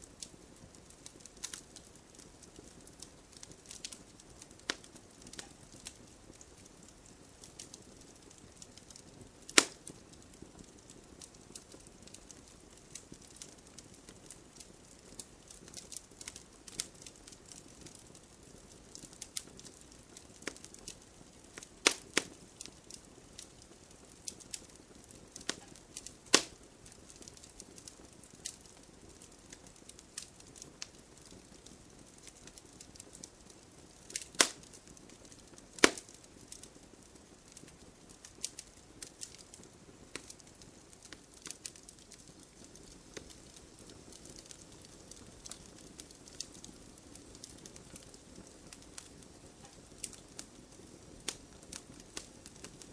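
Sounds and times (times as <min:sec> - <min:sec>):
wood fire crackling: 0:00.0 - 0:52.9.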